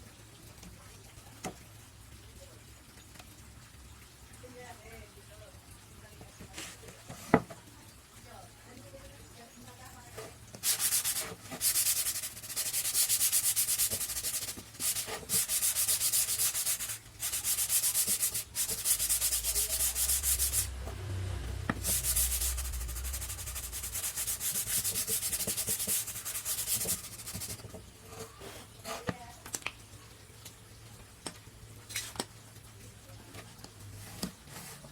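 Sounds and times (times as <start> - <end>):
sandpaper rubbing on wood: 10.6 - 20.7, 21.8 - 27.7.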